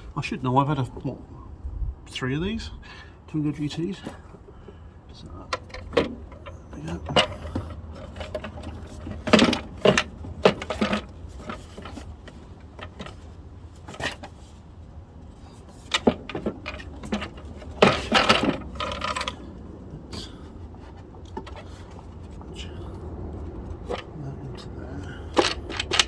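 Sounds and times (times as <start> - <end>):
plastic and metal parts rattling: 5.5 - 14.6, 15.2 - 22.5, 23.3 - 24.2, 25.0 - 26.0.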